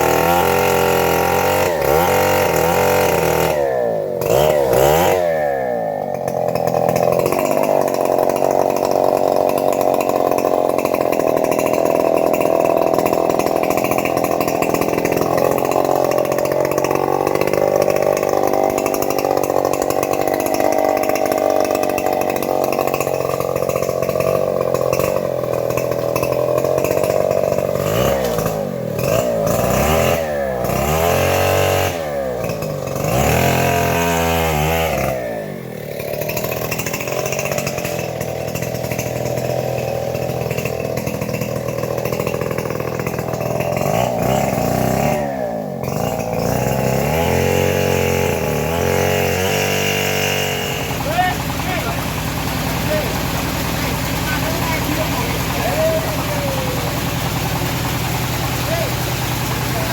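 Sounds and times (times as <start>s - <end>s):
petrol saw engine cutting wood: 0.0s - 59.9s.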